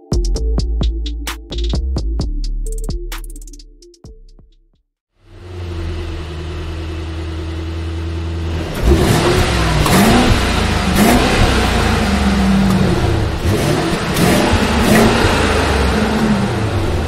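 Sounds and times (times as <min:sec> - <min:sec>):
car engine idling and revving: 0:05.2 - 0:17.0.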